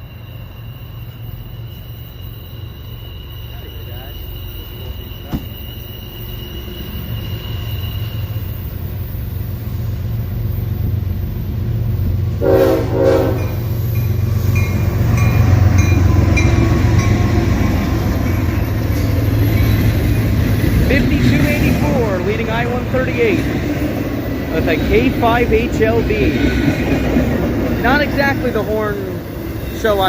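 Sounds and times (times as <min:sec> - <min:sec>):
diesel locomotive rumbling: 0:00.0 - 0:30.0
train air horn blast: 0:12.4 - 0:13.6.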